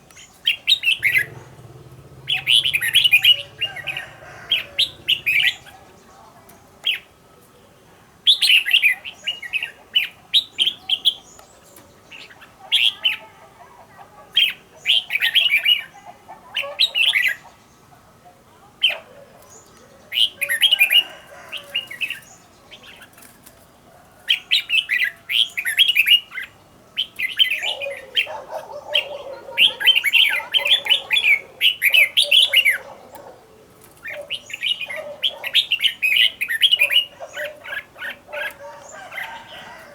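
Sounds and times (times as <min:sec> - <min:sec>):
bird singing chirpy phrases: 0:00.7 - 0:06.1.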